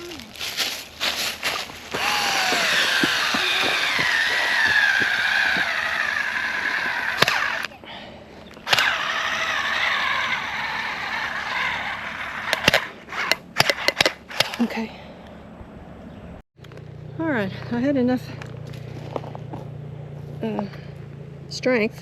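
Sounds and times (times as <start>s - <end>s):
cordless drill driving screws into wood: 1.9s - 7.7s, 8.6s - 14.6s.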